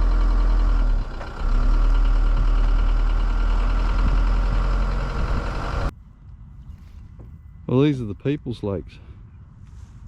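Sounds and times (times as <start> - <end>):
vehicle engine rumbling: 0.0 - 10.0.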